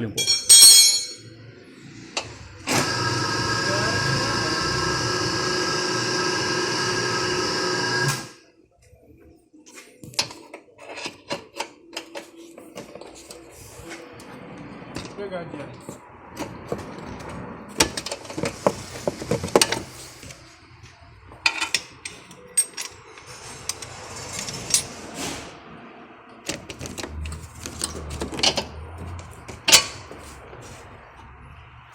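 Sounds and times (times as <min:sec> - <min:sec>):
metal tools clinking: 0:00.2 - 0:01.3, 0:21.4 - 0:25.0.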